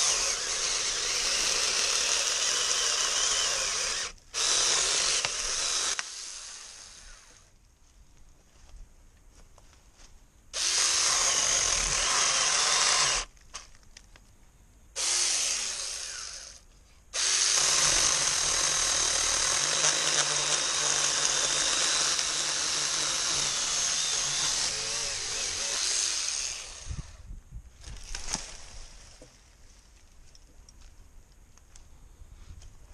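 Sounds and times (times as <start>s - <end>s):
mini chainsaw running: 0.0s - 7.4s, 10.6s - 13.3s, 15.0s - 16.6s, 17.2s - 27.2s.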